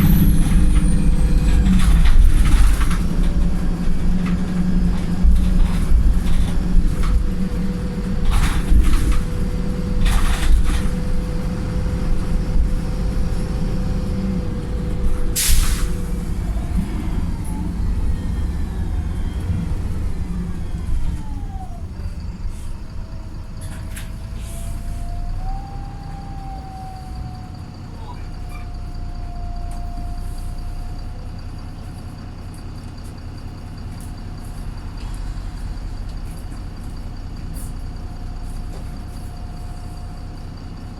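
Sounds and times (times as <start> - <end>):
bus diesel engine rumbling: 0.0 - 40.9
air brake hiss: 15.4 - 16.1, 24.4 - 25.0.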